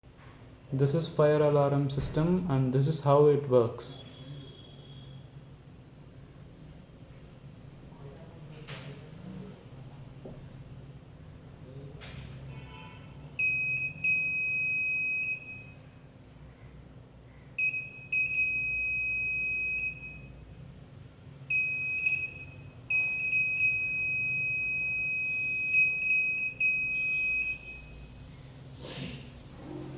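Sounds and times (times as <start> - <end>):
fire alarm buzzer tone: 13.4 - 15.8, 17.6 - 20.4, 21.5 - 28.0.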